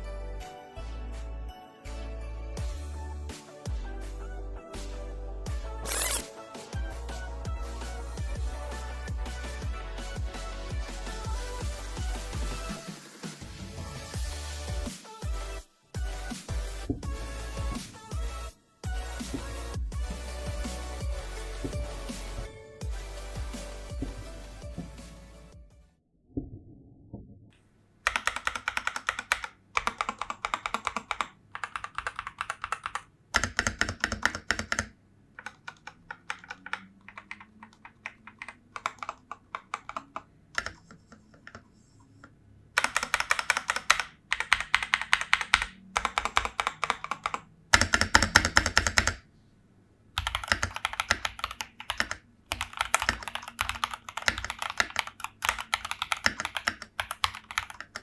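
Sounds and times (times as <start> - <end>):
mechanical keyboard typing: 5.9 - 6.2, 28.0 - 41.6, 42.8 - 49.2, 50.2 - 58.0.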